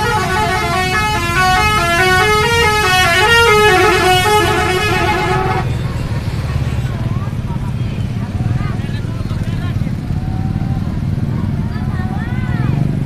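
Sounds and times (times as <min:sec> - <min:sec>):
musical horn playing a tune: 0:00.0 - 0:05.7.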